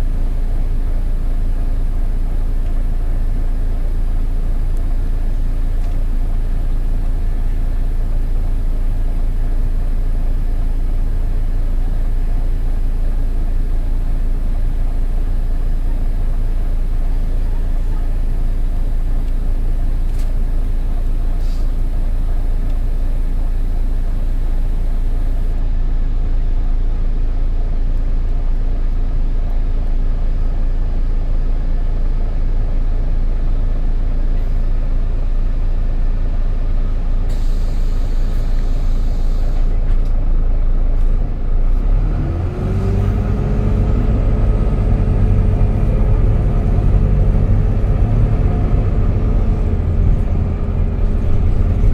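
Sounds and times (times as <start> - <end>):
bus diesel engine running: 0.0 - 51.9
rising engine whine: 41.7 - 51.9.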